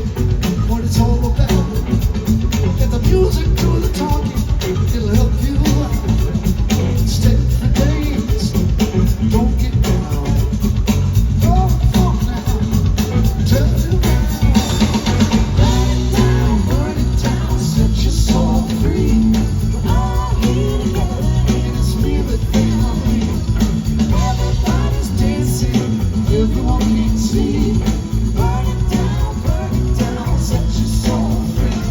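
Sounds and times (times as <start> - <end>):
live rock band: 0.0 - 31.9
person singing: 0.0 - 31.9.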